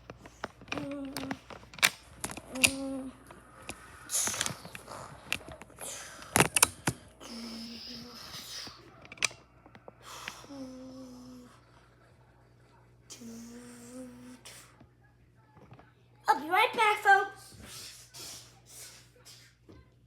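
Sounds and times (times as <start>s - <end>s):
child humming: 0.8s - 1.4s, 2.5s - 3.2s, 10.4s - 11.6s, 13.1s - 14.7s
breathy hissing: 2.2s - 11.8s, 17.4s - 19.6s.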